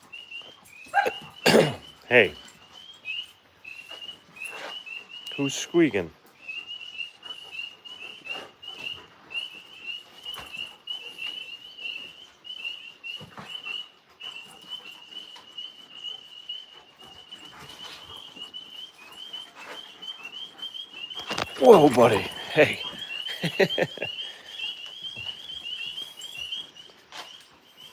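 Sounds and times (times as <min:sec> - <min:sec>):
high-pitched chirps chorus: 0:21.2 - 0:26.5.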